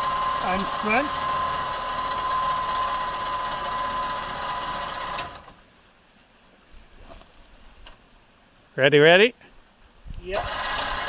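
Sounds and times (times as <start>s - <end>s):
small motor whirring: 0.0s - 5.6s, 10.3s - 11.0s.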